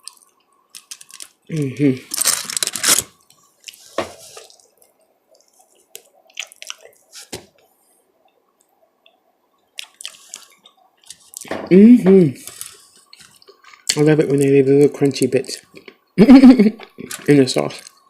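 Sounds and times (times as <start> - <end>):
chewing clicks: 9.8 - 11.5.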